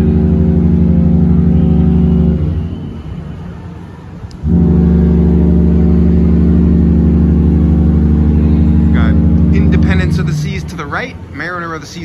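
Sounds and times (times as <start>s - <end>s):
ship horn blast: 0.0s - 3.5s, 4.3s - 11.6s.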